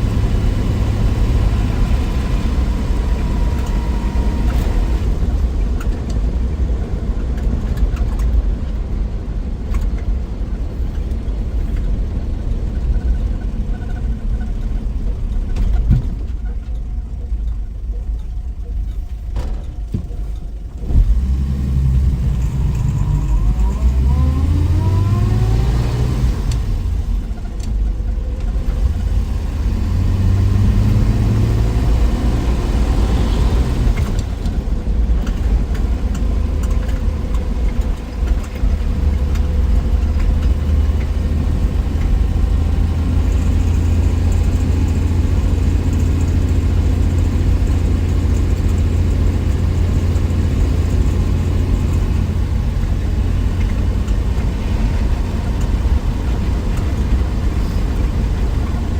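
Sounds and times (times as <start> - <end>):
car engine accelerating: 0.0 - 7.0, 19.9 - 58.9.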